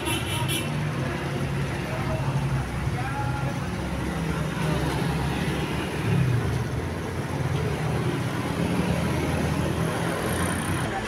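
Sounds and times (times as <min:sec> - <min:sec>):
heavy road traffic rumble: 0:00.0 - 0:11.0.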